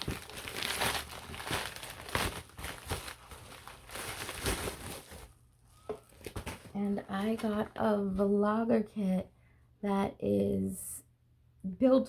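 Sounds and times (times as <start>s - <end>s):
plastic bag crinkling: 0.0s - 7.7s.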